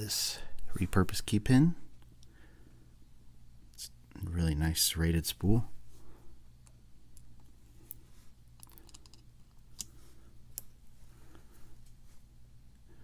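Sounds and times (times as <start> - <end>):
low steady hum: 0.0 - 13.0
metal lock pins clicking: 8.6 - 9.9.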